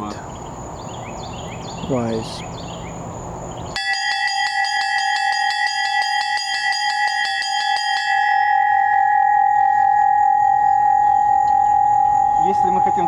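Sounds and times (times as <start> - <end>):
small bells trilling: 3.7 - 13.0.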